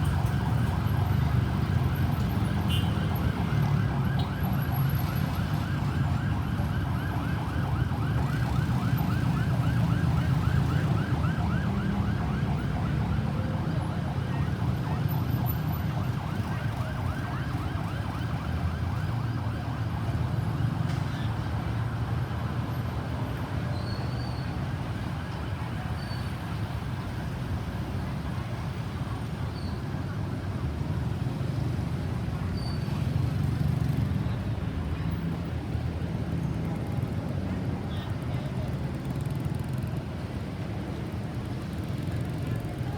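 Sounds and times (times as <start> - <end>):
ambulance siren yelping: 0.0 - 22.7
low rumble of traffic: 0.0 - 42.9.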